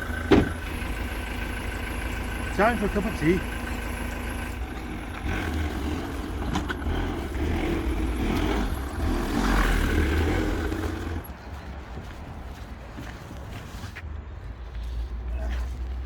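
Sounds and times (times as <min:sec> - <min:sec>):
motor rumbling: 0:00.0 - 0:12.2.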